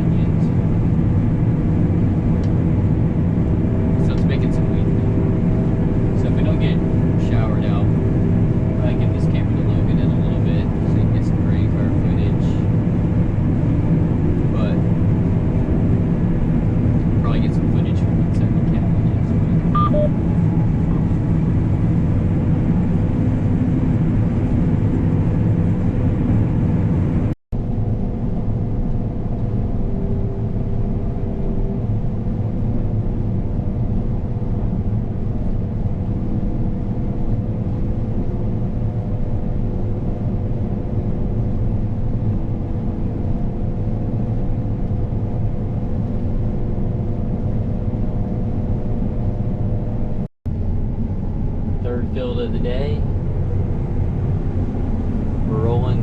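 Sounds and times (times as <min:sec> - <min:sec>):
combine harvester engine drone: 0:00.0 - 0:56.0
faint steady hum: 0:17.0 - 0:23.7.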